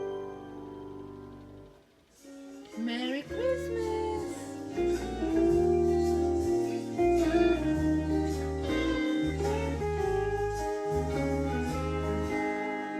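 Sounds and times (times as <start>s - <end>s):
slide guitar melody: 0.0s - 12.9s
bass line: 3.3s - 12.5s.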